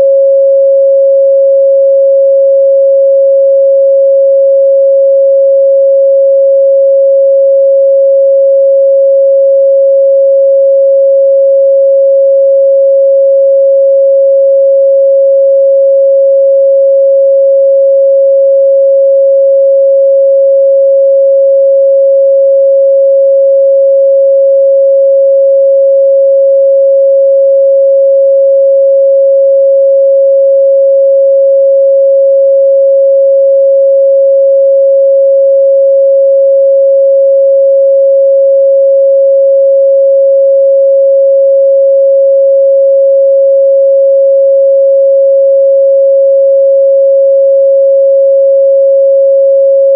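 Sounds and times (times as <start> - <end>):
sine wave test tone: 0.0 - 49.9.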